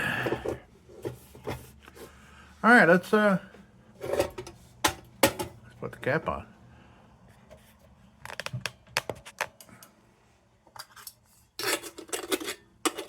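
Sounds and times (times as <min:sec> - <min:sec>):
metal scraping on metal: 0:04.0 - 0:04.6.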